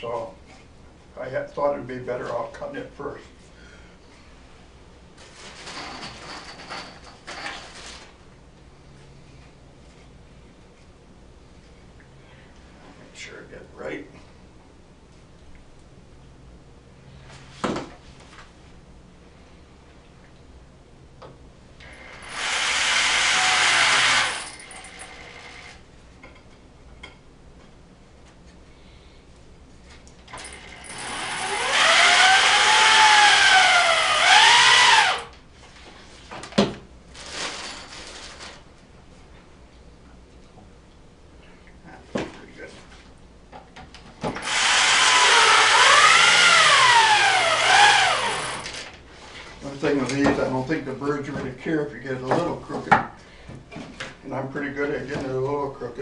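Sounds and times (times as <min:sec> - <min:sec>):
handheld power tool running: 0:21.8 - 0:25.8, 0:30.3 - 0:35.3, 0:44.4 - 0:49.0.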